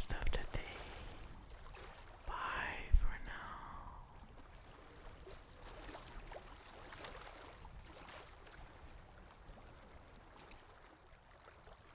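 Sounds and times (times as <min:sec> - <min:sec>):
small splashes: 0:00.0 - 0:02.3
water babbling and trickling: 0:00.0 - 0:11.9.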